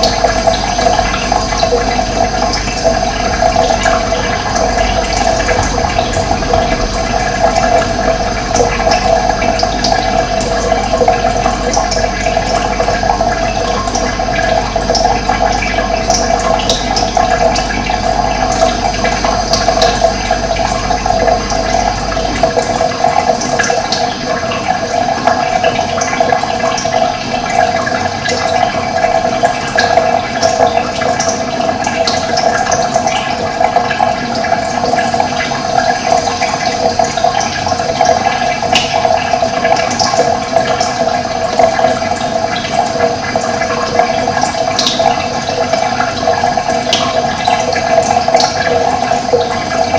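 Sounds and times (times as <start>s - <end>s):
low hum: 0.0s - 25.0s
running water: 0.0s - 49.9s.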